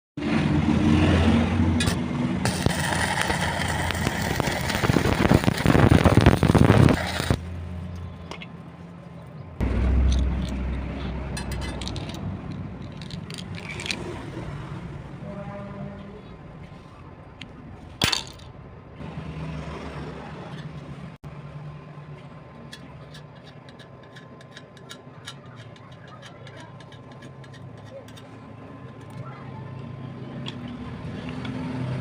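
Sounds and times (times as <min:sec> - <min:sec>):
welding arc crackling: 0:02.4 - 0:07.5.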